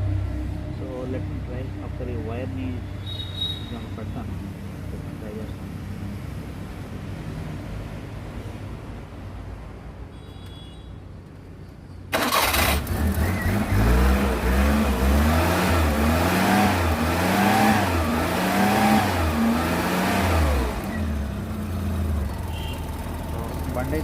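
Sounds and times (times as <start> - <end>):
starter motor cranking: 12.2 - 13.8
car engine revving: 12.2 - 24.0.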